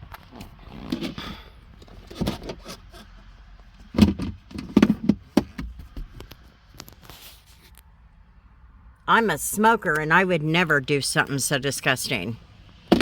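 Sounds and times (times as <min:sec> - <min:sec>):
objects knocking inside car: 0:03.8 - 0:06.4, 0:12.8 - 0:13.0.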